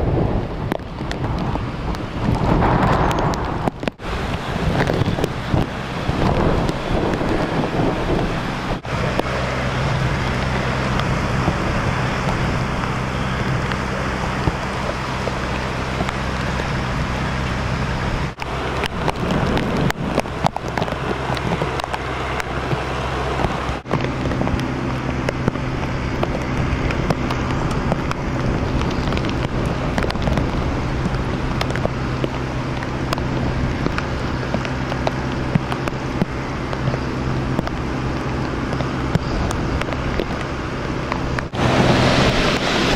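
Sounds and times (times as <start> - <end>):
steady rain: 0.0 - 42.9
vehicle engine humming: 0.0 - 42.9.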